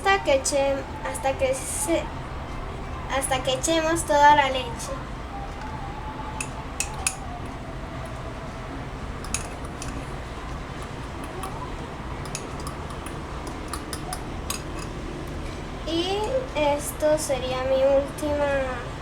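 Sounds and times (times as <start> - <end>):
low background hum: 0.0 - 19.0
metal utensil clicking on container: 6.4 - 7.2, 9.2 - 10.1, 12.2 - 15.4.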